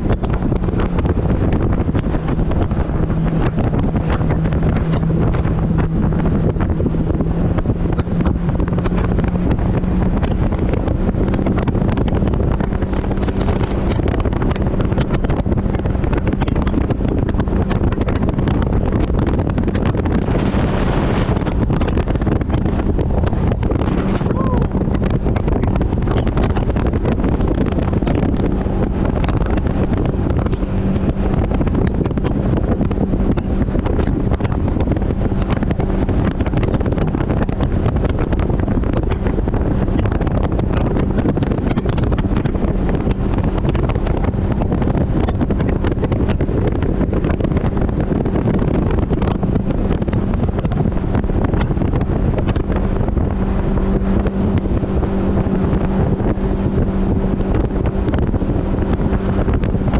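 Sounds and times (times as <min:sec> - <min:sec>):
boat outboard engine droning: 0:00.0 - 0:59.9
wind buffeting microphone: 0:00.0 - 0:59.9.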